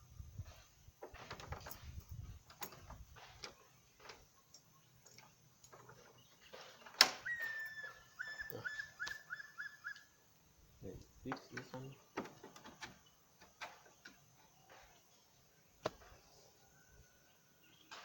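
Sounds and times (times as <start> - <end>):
door lock and tools clicking: 1.2 - 6.2, 6.8 - 7.8.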